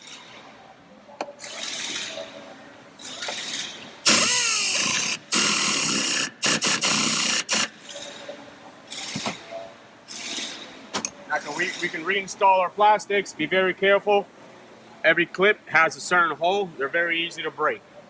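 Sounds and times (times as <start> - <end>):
power tool bursts: 3.4 - 7.8.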